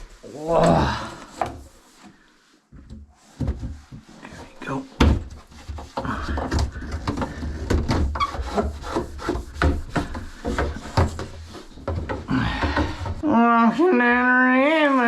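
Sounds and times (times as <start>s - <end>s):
rubbing and scraping on wood: 0.0s - 15.0s
irregular knocks: 5.0s - 13.2s.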